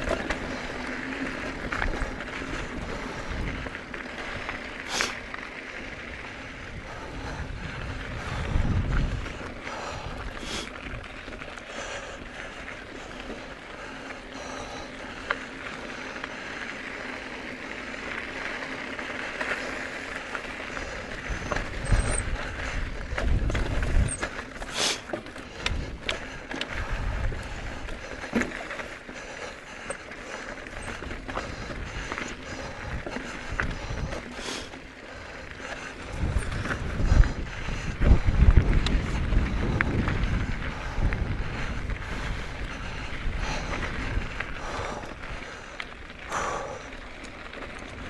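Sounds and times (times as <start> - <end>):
bike chain and frame rattling: 0.0 - 48.0.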